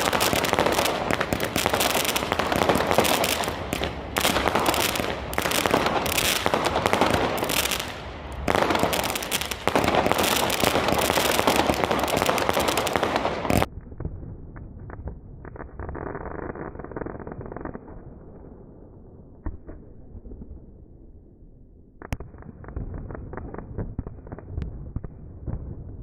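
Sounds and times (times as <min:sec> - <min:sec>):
fireworks crackling bangs: 0:00.0 - 0:17.7.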